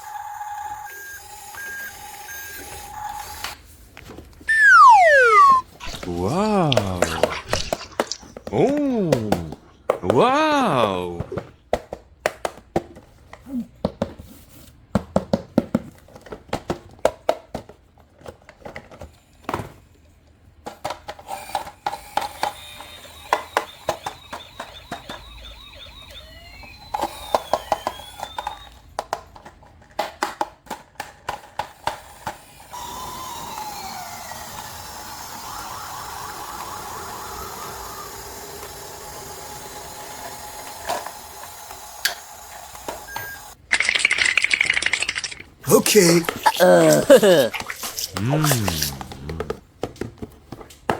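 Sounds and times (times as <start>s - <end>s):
toy electronic siren wailing: 4.5s - 8.2s, 22.2s - 28.8s.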